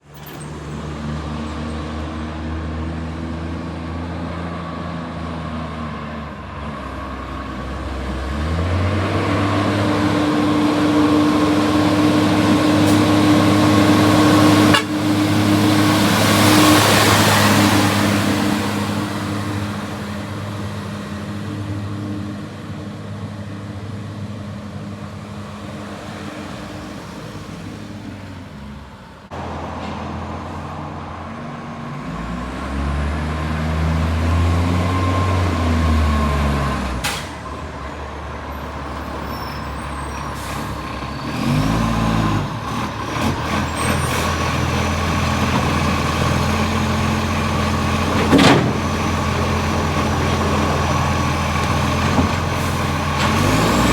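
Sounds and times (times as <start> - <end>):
garbage truck engine revving: 6.6 - 28.1, 31.9 - 37.8, 38.8 - 53.9.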